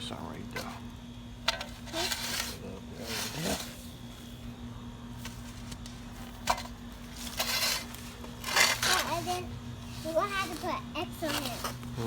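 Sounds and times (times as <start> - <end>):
digging tool scraping soil: 1.8 - 3.8, 7.1 - 11.8.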